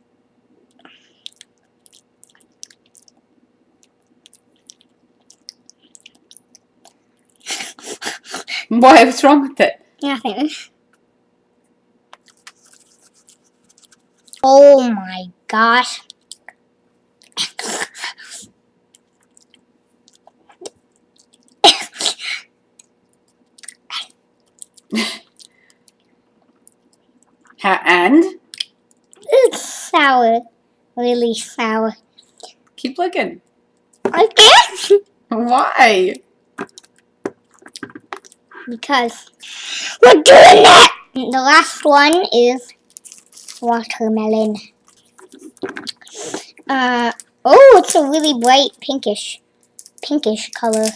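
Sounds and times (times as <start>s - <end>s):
wet mouth clicks and smacks: 0.7s - 3.2s, 3.8s - 7.4s, 12.1s - 14.4s, 18.9s - 21.6s, 22.8s - 27.6s, 28.5s - 29.2s, 36.6s - 38.4s.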